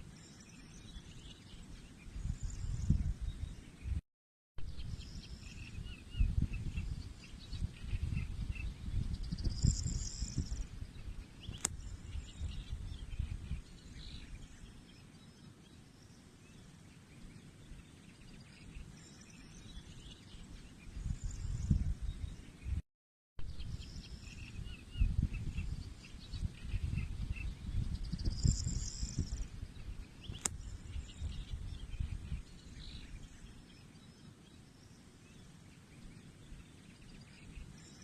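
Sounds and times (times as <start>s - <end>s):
birds chirping: 4.7s - 22.8s, 23.5s - 38.0s
sharp click: 11.6s - 11.8s, 30.4s - 30.6s.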